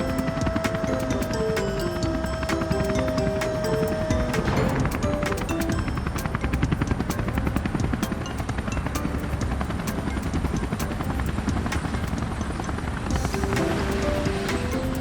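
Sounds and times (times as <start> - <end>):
background music: 0.0 - 15.0
helicopter rotor beating: 0.0 - 15.0.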